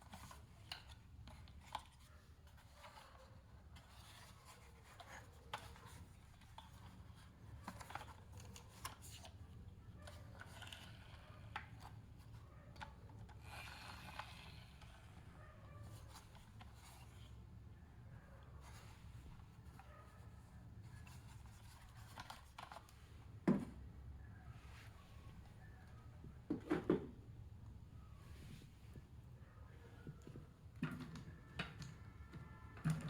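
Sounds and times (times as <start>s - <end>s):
soft rubbing and scraping: 27.9s - 30.7s.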